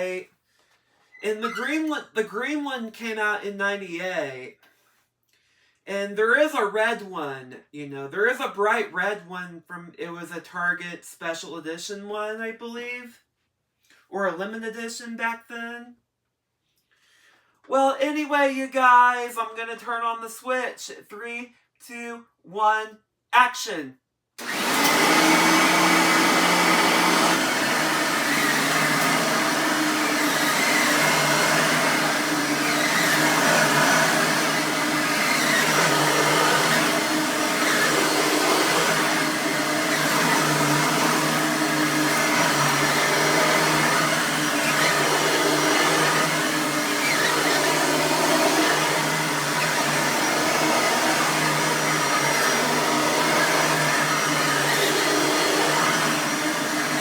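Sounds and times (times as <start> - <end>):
vacuum cleaner motor running: 24.4 - 57.0.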